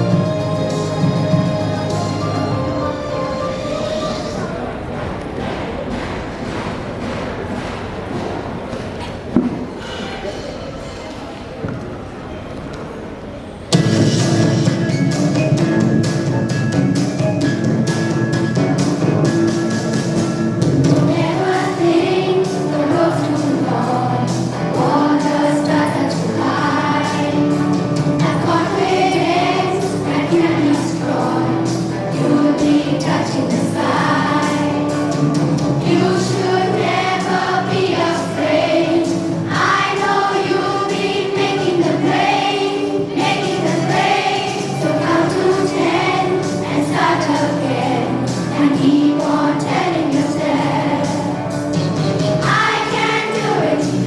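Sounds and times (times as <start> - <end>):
instrumental accompaniment: 0.0 - 8.8, 13.7 - 54.0
children singing: 20.8 - 51.5, 52.3 - 54.0.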